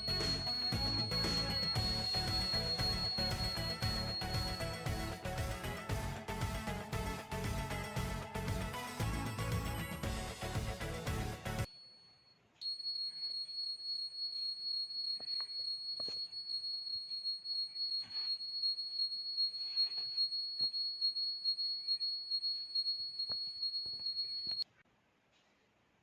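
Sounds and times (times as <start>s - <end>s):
high-pitched alarm buzzer: 0.0s - 7.7s.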